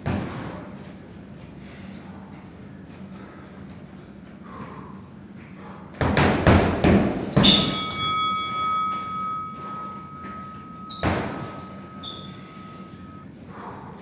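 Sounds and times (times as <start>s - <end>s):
punches on heavy bag: 6.0s - 7.8s
metallic ringing tone: 7.2s - 13.9s.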